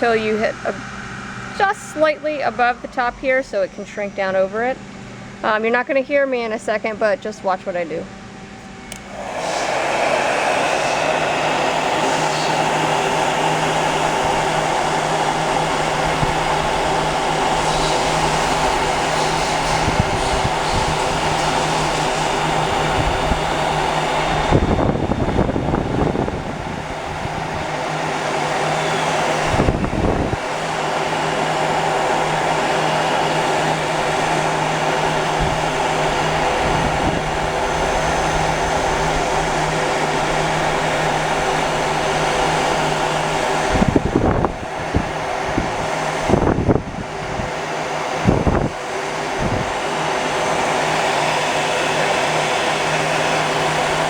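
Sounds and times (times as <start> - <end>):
heat gun blowing: 8.6 - 54.0
short gusty rumbles: 9.0 - 28.6.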